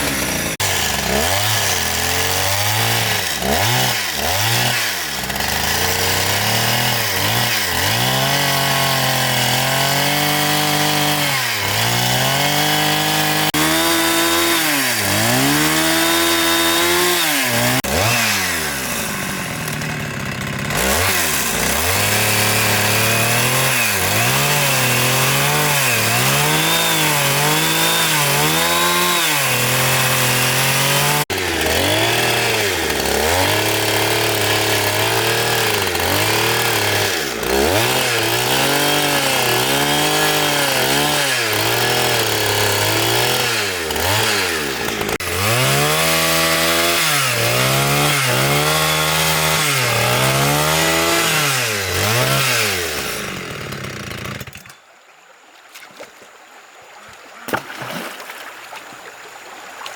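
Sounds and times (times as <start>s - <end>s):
chainsaw cutting wood: 0.0s - 54.9s.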